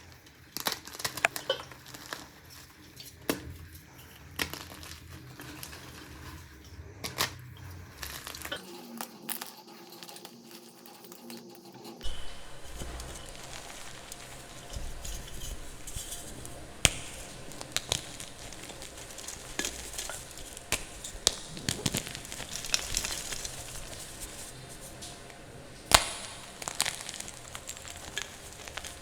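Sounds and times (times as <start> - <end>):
chalk snapping and crackling: 12.0 - 29.0
faint hiss: 12.0 - 29.0.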